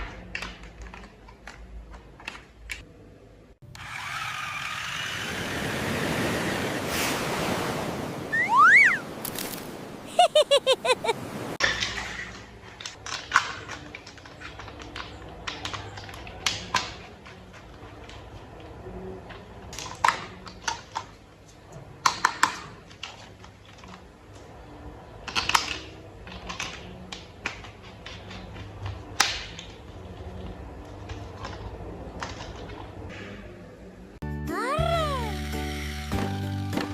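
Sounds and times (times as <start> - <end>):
short falling tones: 8.3 - 9.0.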